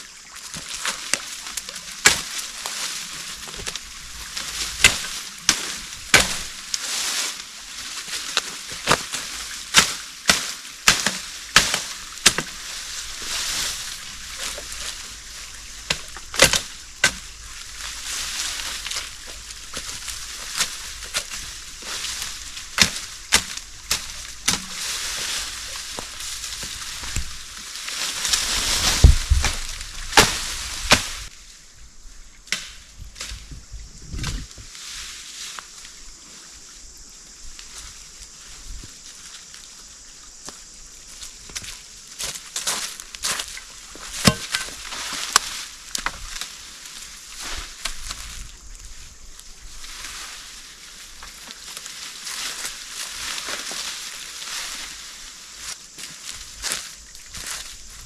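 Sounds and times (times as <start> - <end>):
steady hiss: 0.0 - 58.0
wood being chopped: 2.0 - 2.4, 4.4 - 6.6, 8.8 - 12.6, 15.9 - 17.3, 22.7 - 24.9, 28.8 - 31.3, 44.1 - 46.2.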